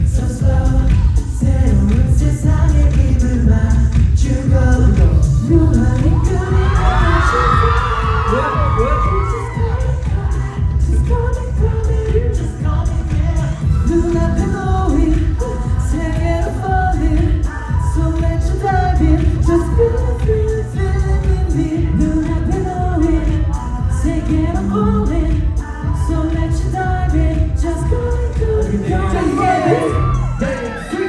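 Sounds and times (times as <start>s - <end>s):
heavy driving bass: 0.0s - 31.0s
pop dance track with singing: 0.0s - 31.0s.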